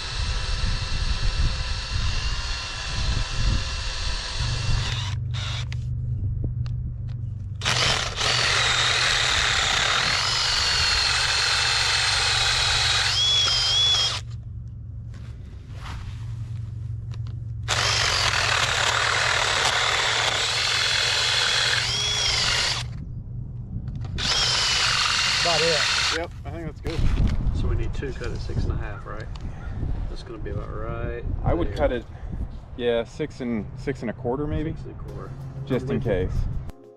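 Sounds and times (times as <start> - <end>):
electric drill boring into stone: 0.0 - 5.8, 7.6 - 14.3, 17.7 - 23.0, 24.1 - 26.3.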